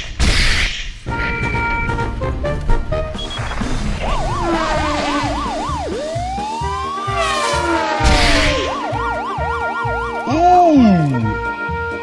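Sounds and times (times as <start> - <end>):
hissing rush: 0.8 - 8.7
siren wail: 1.1 - 11.6.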